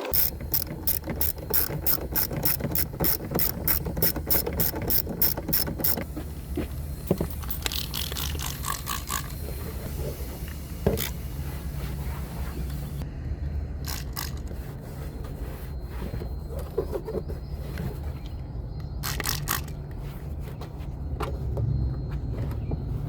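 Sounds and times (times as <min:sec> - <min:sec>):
ratchet wrench clicking: 0:00.0 - 0:06.1, 0:07.2 - 0:09.6.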